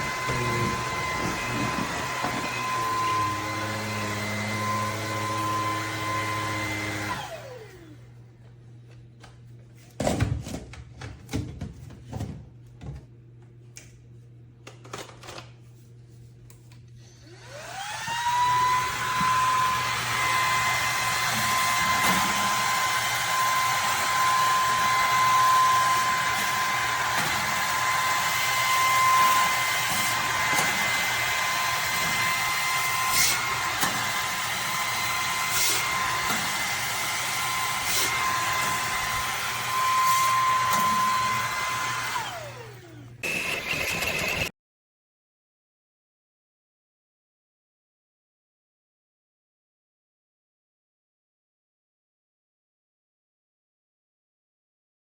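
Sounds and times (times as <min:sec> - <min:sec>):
stick vacuum whining: 0:00.0 - 0:08.1, 0:17.2 - 0:44.5.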